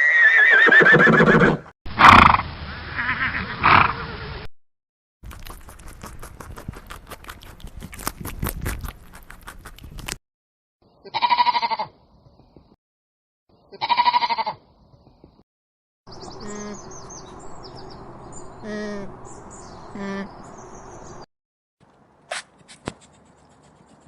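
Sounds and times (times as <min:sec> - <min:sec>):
loud wavering bleats: 0:11.0 - 0:11.9, 0:13.7 - 0:14.6.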